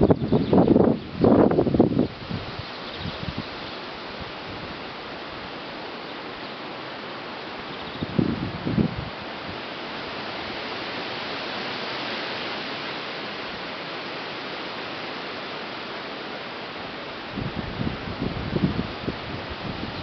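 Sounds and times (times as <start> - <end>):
wind buffeting microphone: 0.0 - 3.6, 7.8 - 9.6, 17.3 - 20.0
wind through tree leaves: 0.0 - 20.0.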